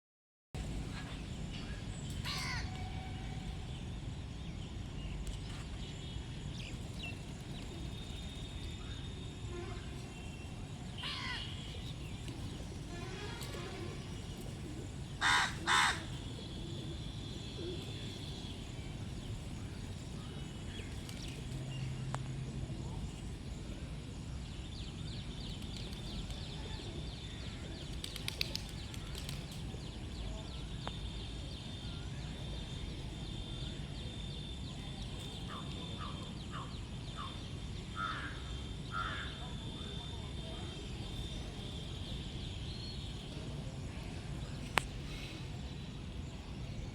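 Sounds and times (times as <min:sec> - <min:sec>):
crow cawing: 0:02.3 - 0:02.7, 0:11.0 - 0:11.5, 0:15.2 - 0:16.2.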